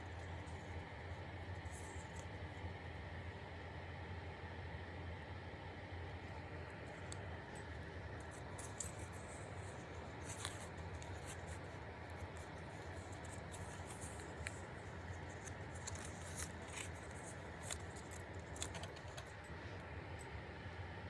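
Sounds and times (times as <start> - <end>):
steady low hum: 0.0 - 21.0
faint rustling: 7.0 - 20.0.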